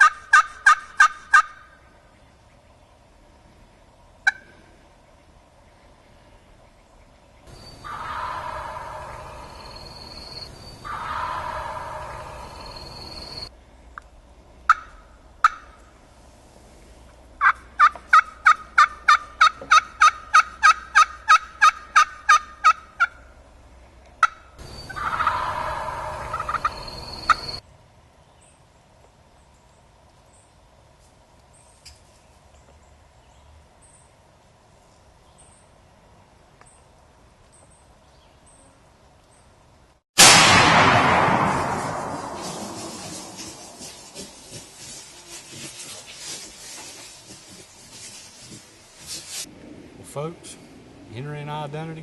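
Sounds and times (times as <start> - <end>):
wild turkey gobbling: 0.0 - 1.7, 4.2 - 4.6, 7.5 - 13.5, 14.7 - 15.8, 17.4 - 23.2, 24.2 - 27.6
turkey calls and yelps: 0.0 - 1.8, 4.2 - 4.7, 7.5 - 13.4, 14.7 - 15.8, 17.4 - 23.2, 24.2 - 27.6
faint high chirps: 8.8 - 13.5.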